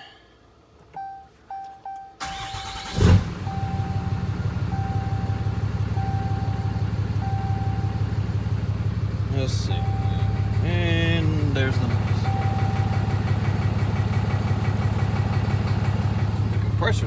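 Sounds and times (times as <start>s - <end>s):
diesel engine idling: 2.2s - 17.0s
diesel engine starter cranking: 2.2s - 17.0s
warning chime beeping: 3.4s - 8.2s, 9.5s - 13.3s.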